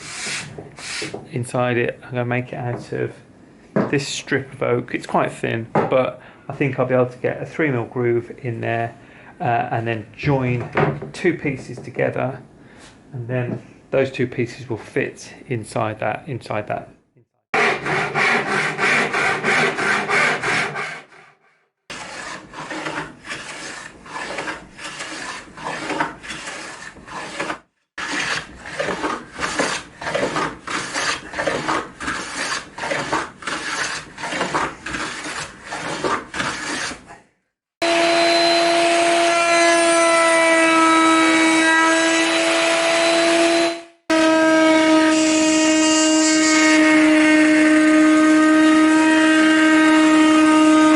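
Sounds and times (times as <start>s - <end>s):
hand saw cutting wood: 0.0s - 1.2s, 17.6s - 21.3s, 21.9s - 37.2s
electric router whining: 37.8s - 43.8s.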